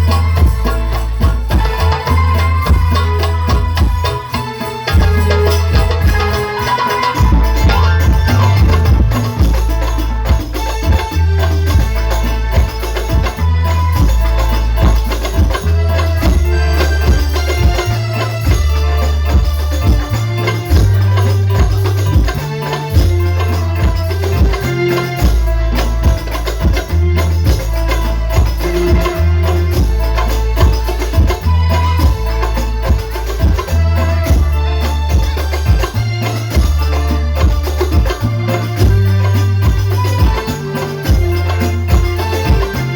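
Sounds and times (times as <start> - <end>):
devotional music with hand drums: 0.0 - 42.9
tambourine jingles: 0.0 - 42.9
heavy booming bass: 7.2 - 24.6.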